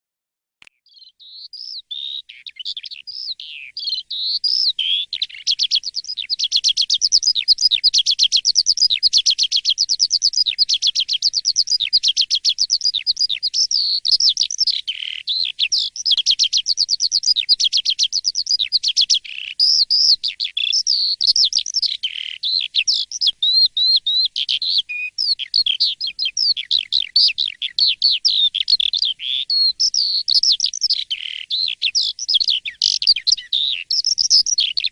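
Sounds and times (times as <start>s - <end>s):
starling singing: 0.9s - 34.9s.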